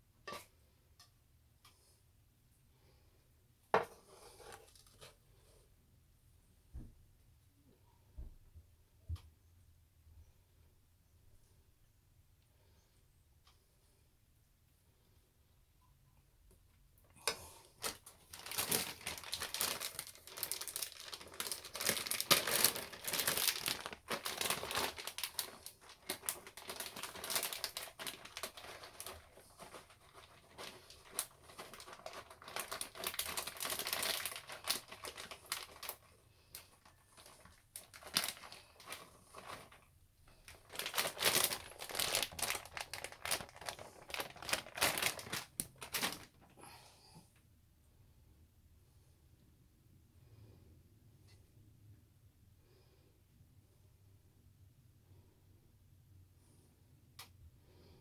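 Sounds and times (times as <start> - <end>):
plastic packaging crinkling: 17.7 - 46.5.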